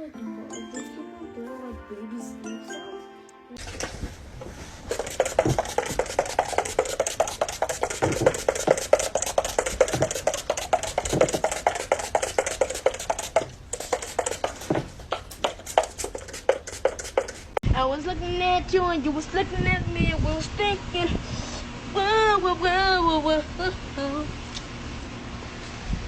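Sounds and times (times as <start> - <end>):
small hard objects clicking and clattering: 4.9 - 17.6.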